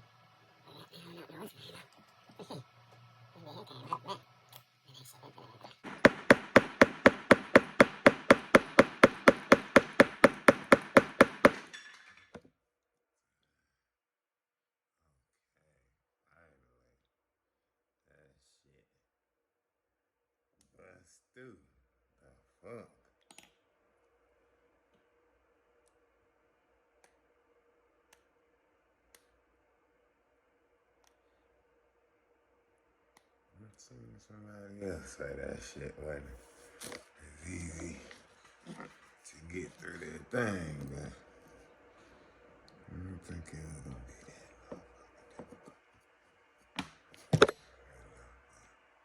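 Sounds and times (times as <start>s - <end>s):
steady hum: 4.2s - 11.7s, 27.8s - 49.0s
hammer tapping metal punch: 5.8s - 12.0s.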